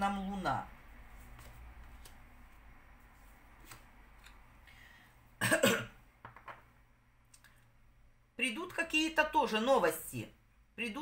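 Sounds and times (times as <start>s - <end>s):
person coughing: 5.4s - 6.0s.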